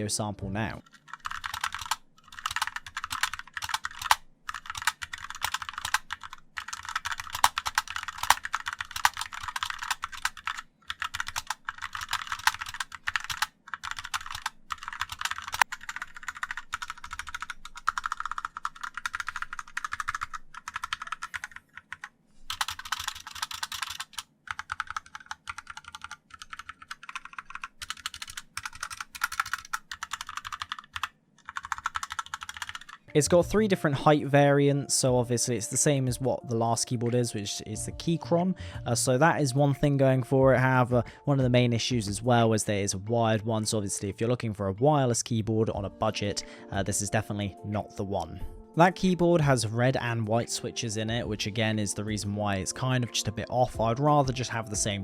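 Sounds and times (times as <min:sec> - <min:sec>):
fast mechanical keyboard typing: 0:00.8 - 0:33.1.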